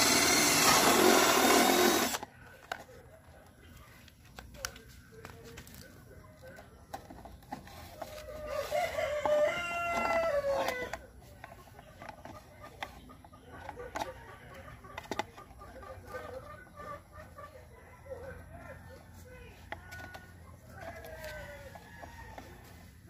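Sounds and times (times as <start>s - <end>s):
rooster crowing: 8.3s - 11.0s, 20.0s - 22.8s.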